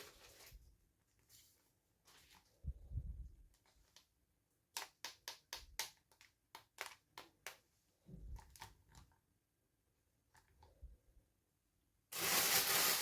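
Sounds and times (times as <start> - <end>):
packaging rustling: 12.2 - 13.0.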